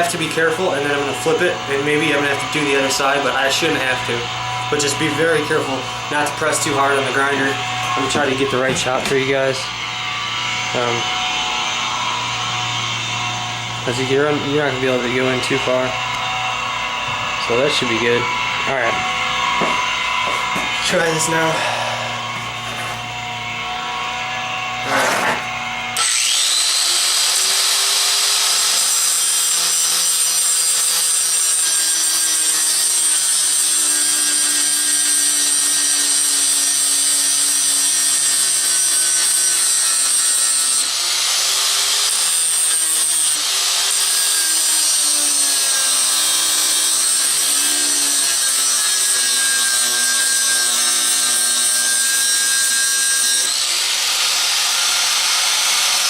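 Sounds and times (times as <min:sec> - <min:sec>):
angle grinder grinding metal: 0:00.0 - 0:56.0.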